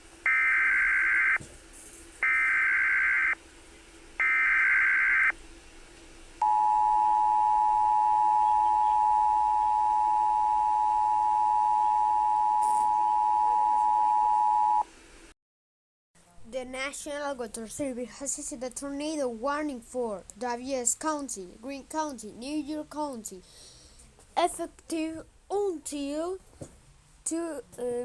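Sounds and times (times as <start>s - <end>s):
data burst tones: 0.3s - 1.4s, 2.2s - 3.4s, 4.2s - 5.3s, 6.4s - 14.8s
two-tone attention signal: 0.3s - 1.4s, 6.4s - 14.8s.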